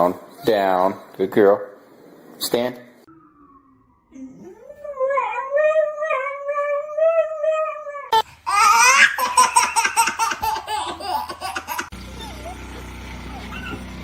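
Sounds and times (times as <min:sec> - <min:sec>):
dog howling: 0:03.1 - 0:08.2, 0:12.2 - 0:14.0.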